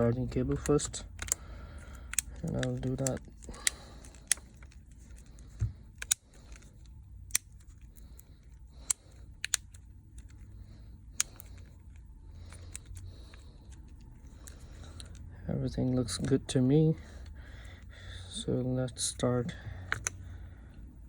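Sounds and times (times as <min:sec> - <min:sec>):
phone parts clicking together: 0:00.0 - 0:15.3, 0:19.1 - 0:20.2.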